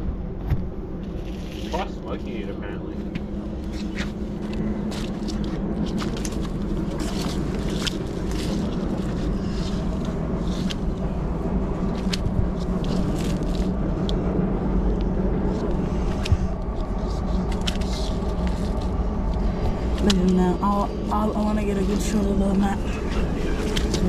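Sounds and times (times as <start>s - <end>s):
engine rumble: 0.0s - 24.0s.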